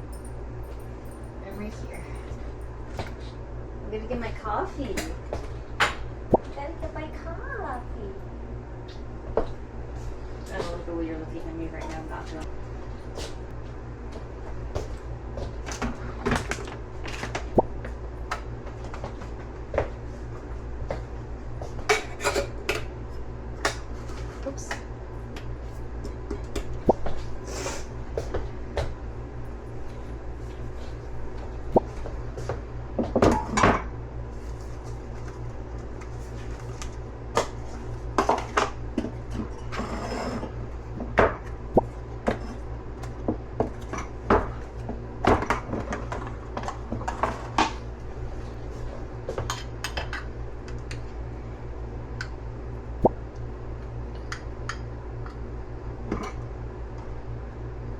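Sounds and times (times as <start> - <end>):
steady low hum: 0.0 - 57.9
dishes and utensils clinking: 21.9 - 22.8.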